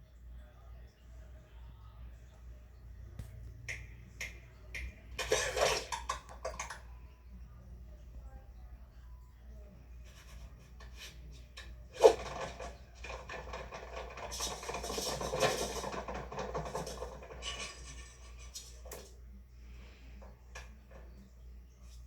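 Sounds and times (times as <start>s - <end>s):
rubbing and scraping: 5.2s - 6.2s, 10.0s - 19.1s.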